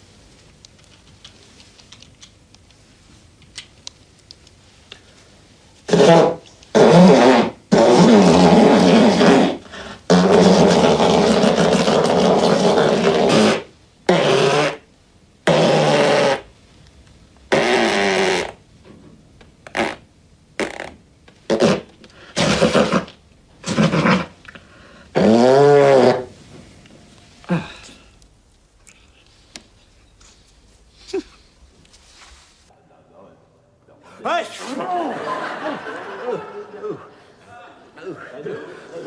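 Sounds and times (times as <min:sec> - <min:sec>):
loud nose-blowing: 0:05.9 - 0:16.5, 0:17.5 - 0:18.6, 0:19.7 - 0:20.0, 0:20.6 - 0:26.4
man sneezing: 0:34.1 - 0:35.2.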